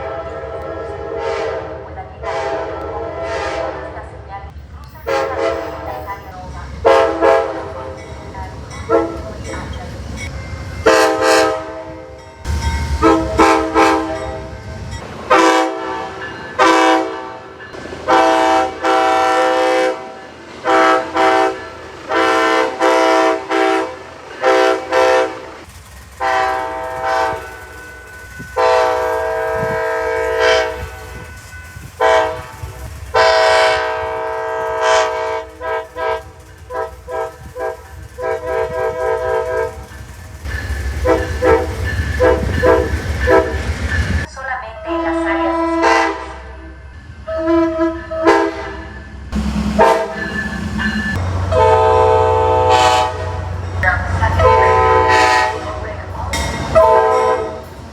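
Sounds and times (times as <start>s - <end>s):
locomotive air horn blasts: 0.0s - 3.9s, 5.1s - 6.2s, 6.8s - 7.7s, 8.9s - 9.2s, 10.8s - 12.2s, 12.9s - 14.6s, 15.3s - 25.6s, 26.2s - 27.6s, 28.6s - 31.4s, 32.0s - 39.9s, 41.0s - 43.7s, 44.9s - 46.6s, 47.3s - 48.9s, 49.7s - 50.4s, 51.5s - 53.6s, 54.2s - 56.1s, 56.7s - 57.7s
passing train rumble: 0.0s - 57.9s.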